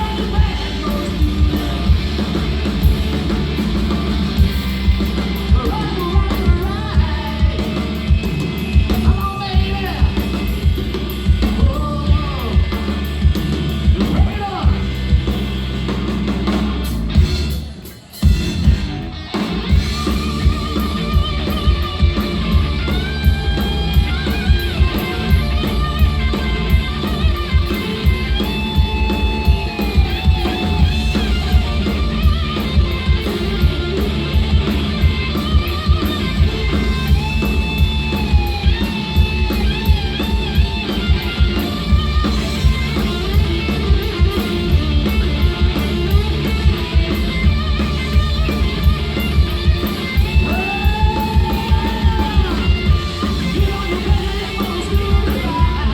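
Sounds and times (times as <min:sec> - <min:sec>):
bass guitar: 0:00.0 - 0:55.9
electric guitar lead: 0:00.0 - 0:55.9
steady drum beat: 0:00.0 - 0:55.9.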